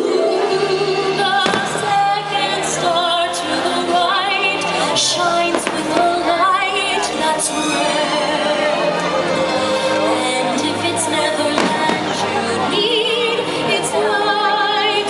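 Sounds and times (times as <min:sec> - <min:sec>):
soundtrack music: 0:00.0 - 0:15.0
woman singing with vibrato: 0:00.0 - 0:15.0
fireworks cracking: 0:01.4 - 0:02.5, 0:11.6 - 0:12.2.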